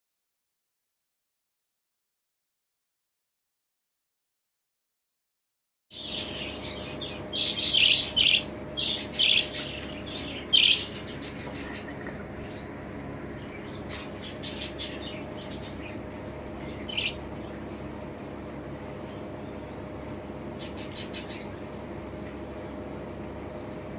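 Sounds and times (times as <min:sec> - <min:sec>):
budgerigars chirping: 0:06.0 - 0:12.8, 0:13.4 - 0:17.6, 0:20.6 - 0:21.6
steady low hum: 0:06.0 - 0:23.9.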